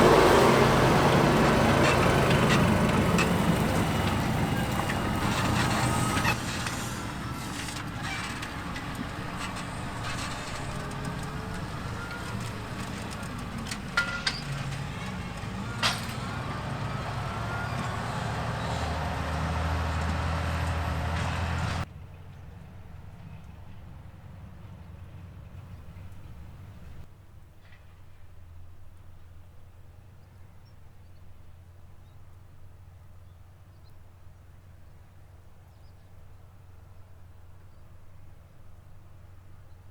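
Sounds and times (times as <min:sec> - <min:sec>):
tractor diesel engine under load: 0:00.0 - 0:21.9, 0:24.3 - 0:27.1.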